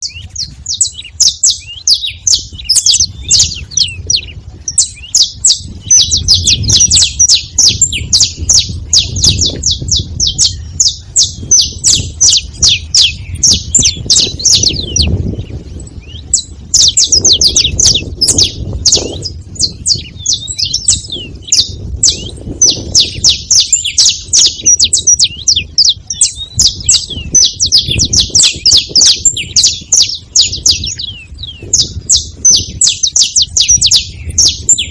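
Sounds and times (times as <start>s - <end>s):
finch chirping: 0.0s - 34.9s.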